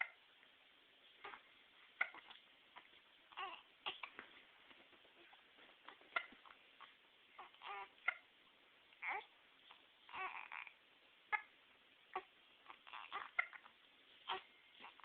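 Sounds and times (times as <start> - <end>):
baby babbling softly: 1.2 - 4.2, 5.2 - 8.2, 8.9 - 11.5, 12.1 - 15.0
baby hiccupping: 1.2 - 4.2, 10.1 - 11.5, 12.1 - 13.7.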